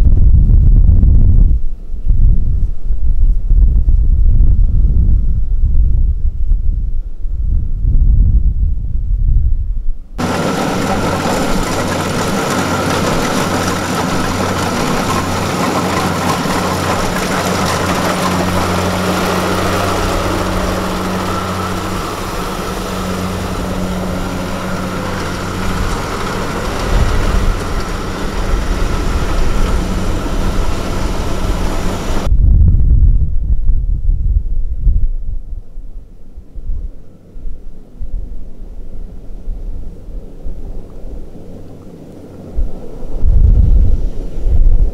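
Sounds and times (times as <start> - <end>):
tractor diesel engine running: 10.2 - 32.3.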